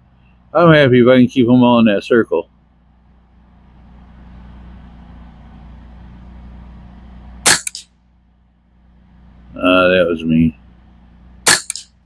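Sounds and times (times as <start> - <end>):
rifle shot with echo: 7.4 - 7.9, 11.4 - 11.9.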